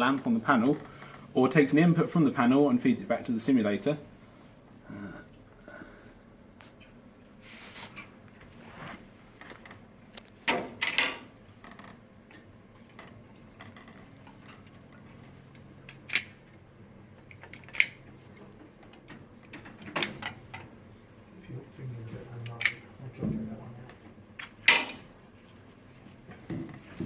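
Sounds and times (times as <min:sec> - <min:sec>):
wires rustling and clicking: 0:06.6 - 0:20.8.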